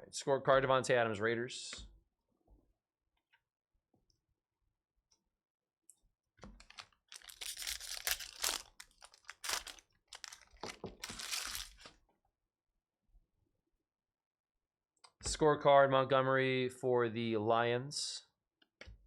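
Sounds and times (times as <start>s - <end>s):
foil wrappers tearing: 6.6s - 11.9s.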